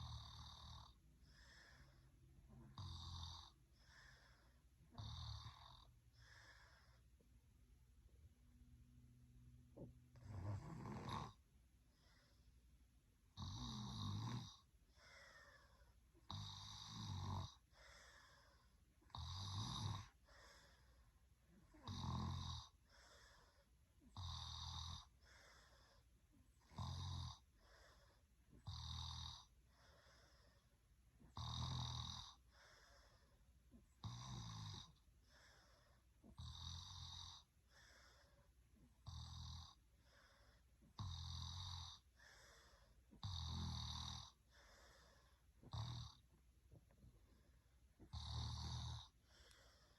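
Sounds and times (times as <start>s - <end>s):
person snoring: 0.0s - 7.0s, 10.1s - 11.4s, 13.4s - 21.0s, 21.7s - 26.0s, 26.6s - 30.6s, 31.3s - 33.3s, 39.0s - 46.2s, 48.1s - 49.9s.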